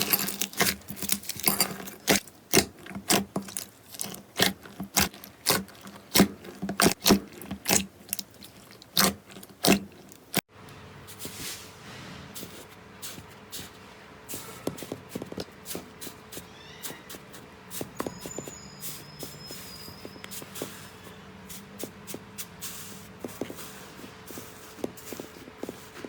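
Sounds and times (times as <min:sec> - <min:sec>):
slime squishing: 0:00.0 - 0:10.5.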